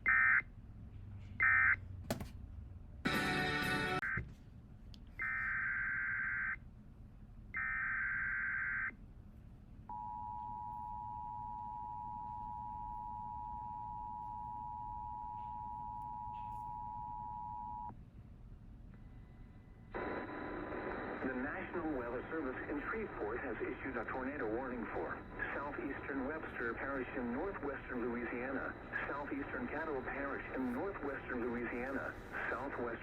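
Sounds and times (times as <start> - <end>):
synthesized voice speaking: 21.2 - 33.0.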